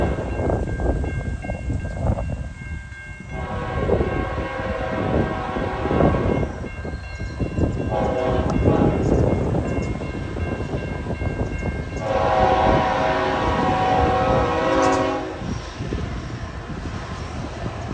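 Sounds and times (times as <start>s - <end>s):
locomotive air horn blasts: 3.3s - 6.4s, 7.9s - 9.1s, 12.0s - 15.5s.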